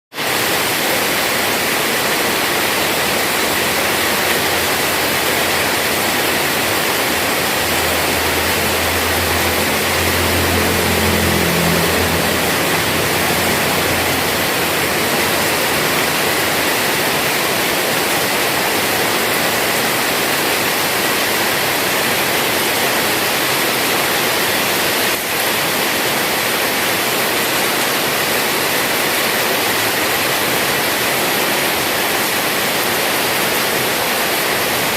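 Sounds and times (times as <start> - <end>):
heavy rain pouring: 0.1 - 34.9
low hum: 3.3 - 17.4.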